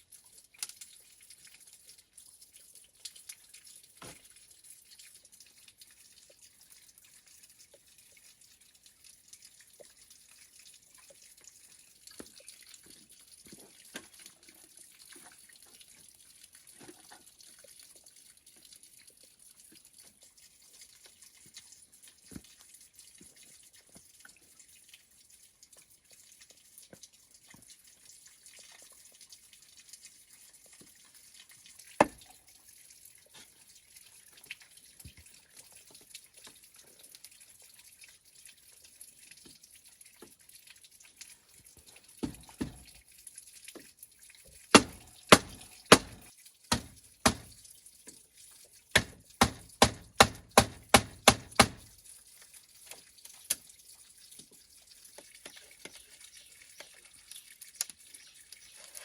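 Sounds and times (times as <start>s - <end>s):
sharp taps: 44.8s - 47.5s.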